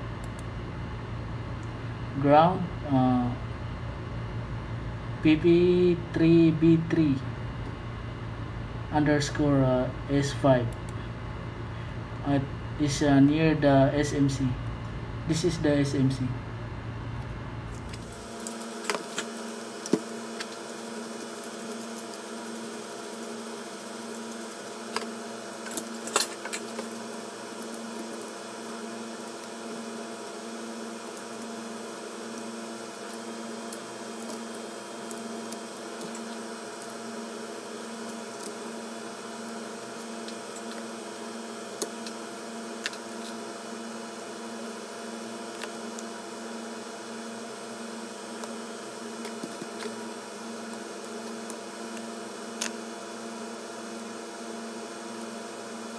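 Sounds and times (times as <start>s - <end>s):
electrical hum: 0.0s - 55.9s.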